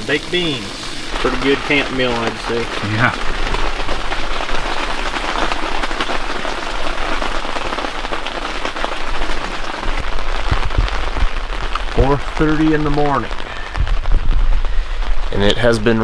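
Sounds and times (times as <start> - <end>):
heavy rain falling: 0.0 - 16.0
low bumps: 9.8 - 16.0.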